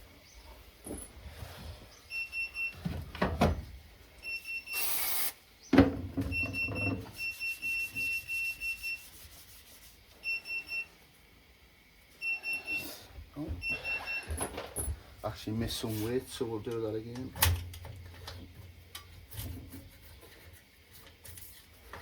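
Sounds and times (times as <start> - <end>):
brief hiss: 4.7 - 5.4.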